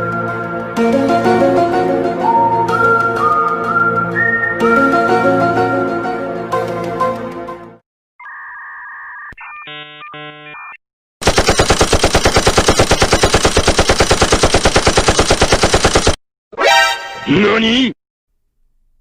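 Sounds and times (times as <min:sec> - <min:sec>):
music: 0:00.0 - 0:07.8
machine-gun fire sound effect: 0:11.2 - 0:16.2.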